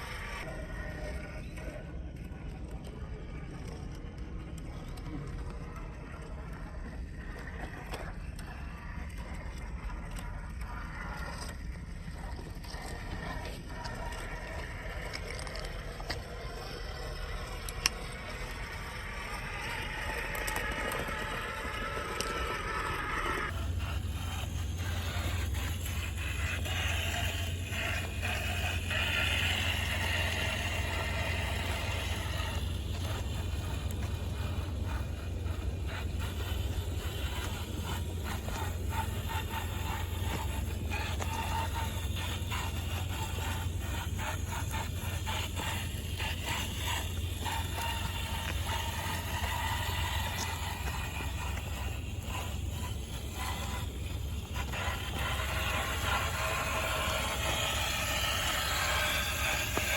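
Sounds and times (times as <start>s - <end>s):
electric motor and gear whir: 0.0s - 59.9s
low rumble: 0.0s - 59.9s
tyres scraping on rock: 11.2s - 59.9s.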